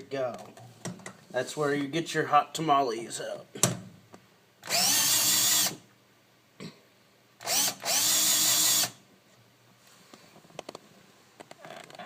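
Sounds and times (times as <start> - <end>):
cordless drill driving screw: 4.6 - 5.8, 7.4 - 9.0.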